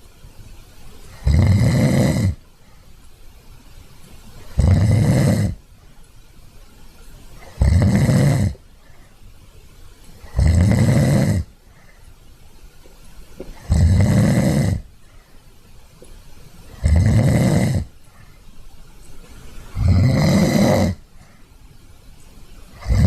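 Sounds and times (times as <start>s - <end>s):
pigs snoring: 1.1s - 2.4s, 4.5s - 5.6s, 7.4s - 8.6s, 10.2s - 11.6s, 13.5s - 14.9s, 16.7s - 18.0s, 19.7s - 21.0s, 22.7s - 23.0s.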